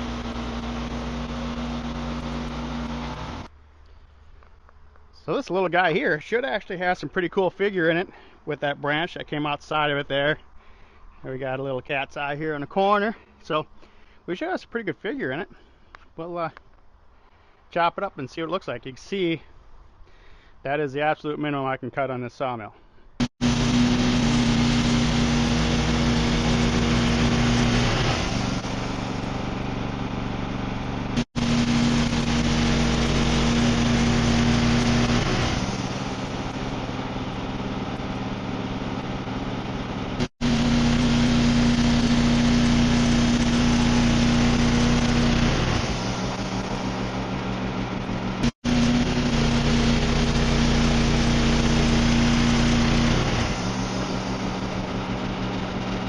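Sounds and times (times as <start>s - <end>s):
sawmill engine humming: 0.0s - 16.6s, 23.2s - 56.0s
band blade sawing through wood: 23.3s - 29.5s, 31.2s - 38.3s, 40.2s - 56.0s.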